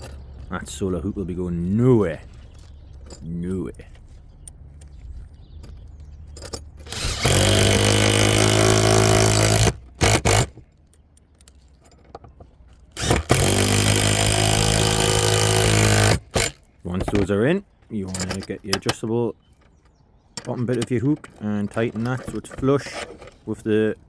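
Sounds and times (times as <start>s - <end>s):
drill trigger blips: 6.8s - 10.5s, 13.0s - 16.6s
cordless drill driving screws: 6.8s - 10.6s, 13.0s - 16.7s.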